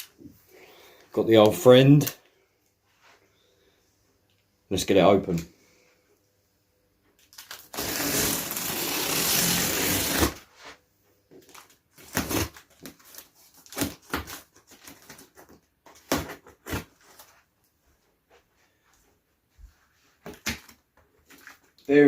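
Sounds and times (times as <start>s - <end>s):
cardboard ripping: 7.3s - 10.5s, 11.5s - 17.3s.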